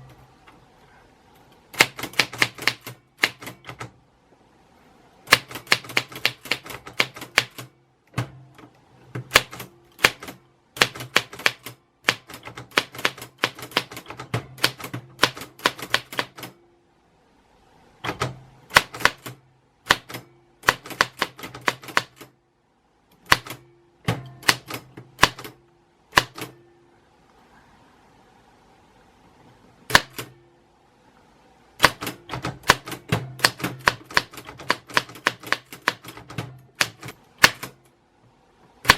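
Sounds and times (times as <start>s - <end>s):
typewriter keys clacking: 1.8s - 3.9s, 5.3s - 7.7s, 9.2s - 16.6s, 31.8s - 37.8s.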